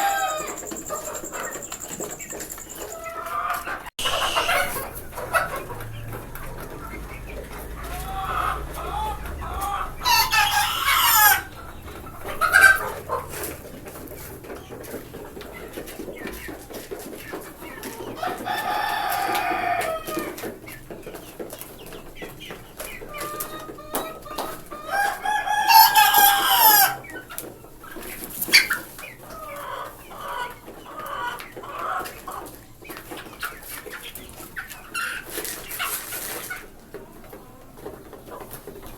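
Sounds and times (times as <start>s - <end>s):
rooster crowing loudly: 0.0s - 0.7s, 4.0s - 5.5s, 7.9s - 11.6s, 18.2s - 20.3s, 24.9s - 27.0s
chickens clucking: 0.0s - 38.9s.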